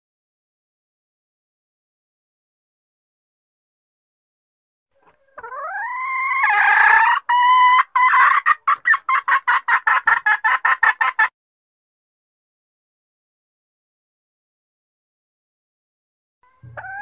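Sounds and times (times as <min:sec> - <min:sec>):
hen calling and clucking: 0:05.0 - 0:11.3, 0:16.4 - 0:17.0.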